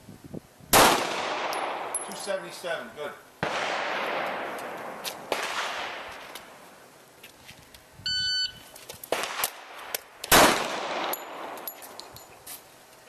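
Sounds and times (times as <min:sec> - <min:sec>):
shot timer beep: 0:08.1 - 0:08.7
handgun shot: 0:10.3 - 0:11.6.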